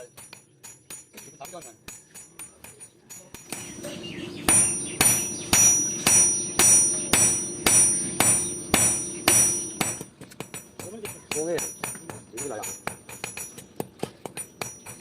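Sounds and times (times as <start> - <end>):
hammer striking steel on anvil: 0.0 - 15.0.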